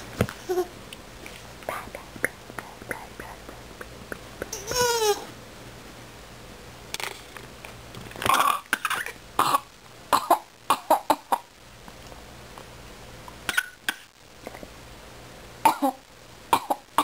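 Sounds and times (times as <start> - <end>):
baby coughing: 8.3 - 11.4, 13.5 - 14.1, 15.6 - 17.0.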